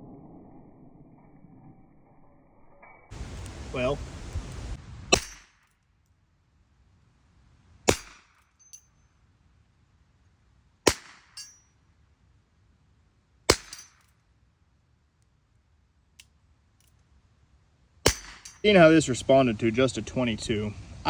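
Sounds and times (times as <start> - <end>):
faint metallic clink: 8.3 - 9.1, 11.2 - 11.8, 13.6 - 14.2, 18.1 - 18.8.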